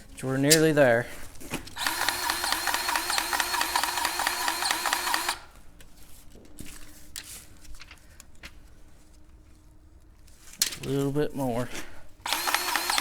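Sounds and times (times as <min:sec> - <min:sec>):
grease gun pulsing whir: 0:01.8 - 0:05.5, 0:12.3 - 0:13.0.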